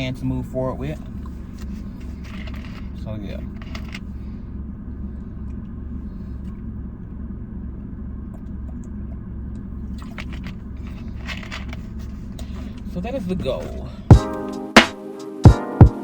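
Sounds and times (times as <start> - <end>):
car engine idling: 0.0 - 14.6
brief rustles: 1.3 - 4.1.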